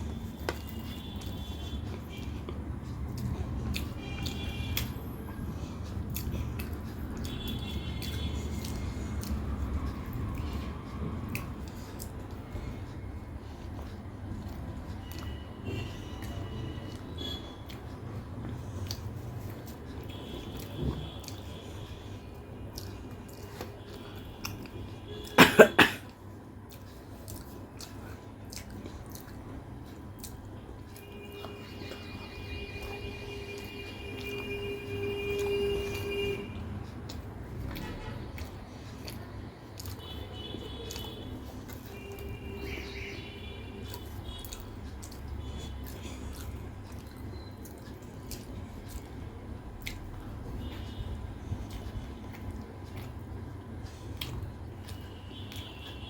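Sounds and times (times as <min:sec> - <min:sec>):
soft chewing clicks: 0:00.0 - 0:25.4, 0:26.0 - 0:32.1, 0:32.7 - 0:56.0
woman coughing hoarsely: 0:25.3 - 0:26.1.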